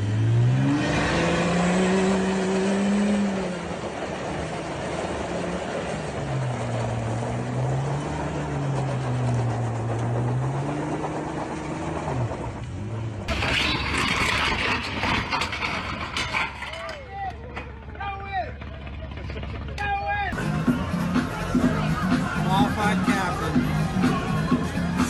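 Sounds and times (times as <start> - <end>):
engine revving: 0.0 - 16.5.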